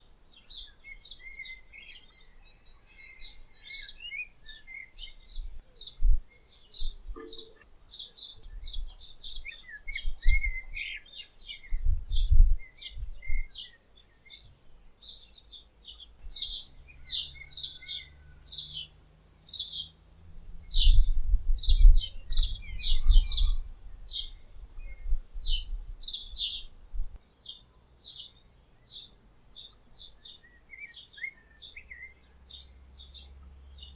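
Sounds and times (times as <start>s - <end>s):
songbirds chirping: 0.0s - 33.9s
low rumbles: 16.2s - 27.2s.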